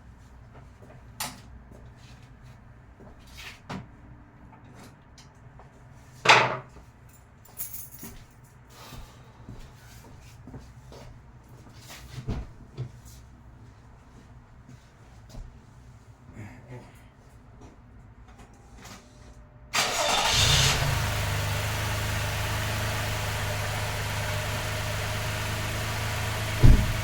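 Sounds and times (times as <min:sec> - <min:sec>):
loud thump: 0:26.4 - 0:27.0.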